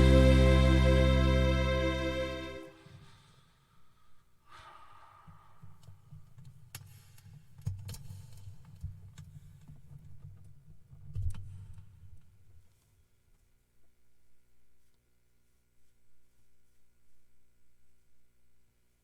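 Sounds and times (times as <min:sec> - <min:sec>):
low rumble: 0:00.0 - 0:02.6.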